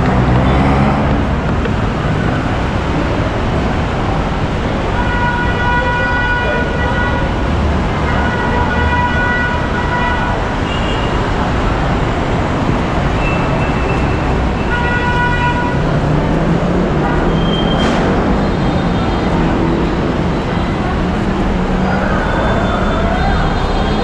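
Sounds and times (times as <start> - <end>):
train running noise: 9.6 - 24.0.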